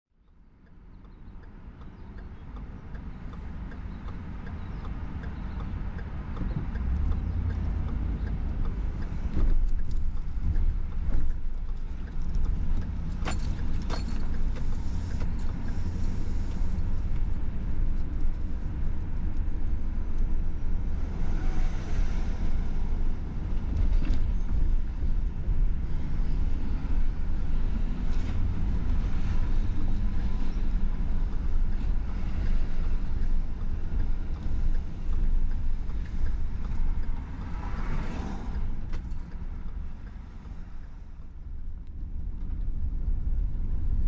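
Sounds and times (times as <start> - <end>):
road traffic rumble: 0.3 - 44.0.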